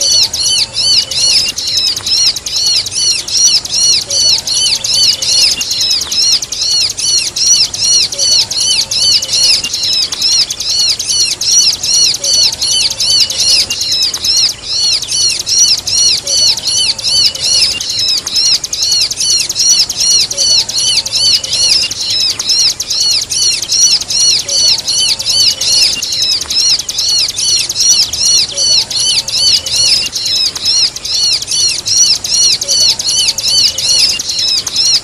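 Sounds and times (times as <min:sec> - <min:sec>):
bird calling rapid high chirps: 0:00.0 - 0:35.0.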